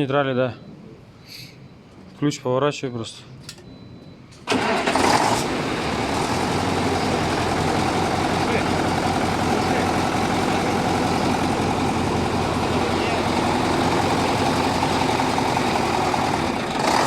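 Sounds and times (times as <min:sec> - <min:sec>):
truck diesel engine running: 0:04.4 - 0:17.0.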